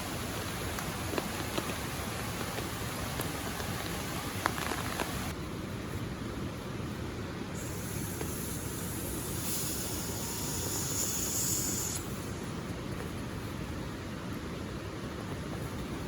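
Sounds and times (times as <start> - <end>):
river and waterfall rushing: 0.0 - 5.3
rain: 0.0 - 16.0
bright hiss: 7.5 - 12.8.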